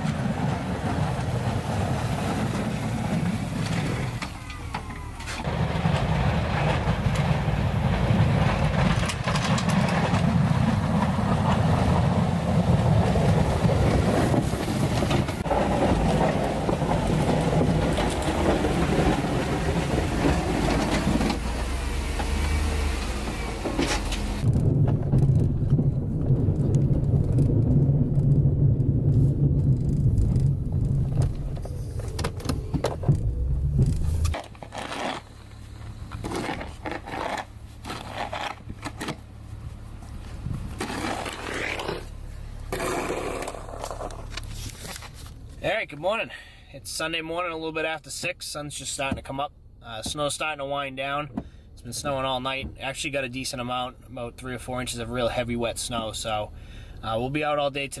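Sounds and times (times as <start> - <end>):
vehicle engine rumble: 0.0 - 58.0
road or wind noise hiss: 10.3 - 24.5.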